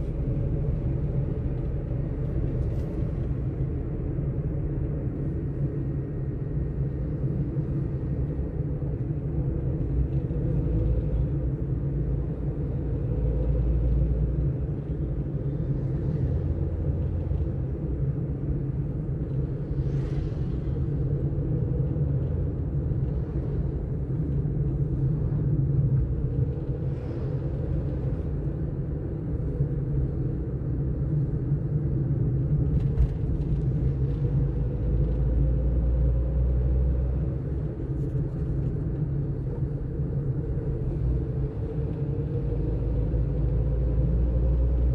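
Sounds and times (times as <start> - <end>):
car engine and road rumble: 0.0 - 44.9.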